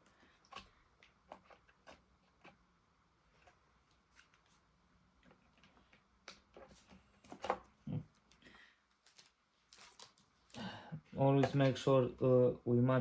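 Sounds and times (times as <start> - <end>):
clicks and rustles of handling parts: 5.2 - 10.6, 11.3 - 11.9.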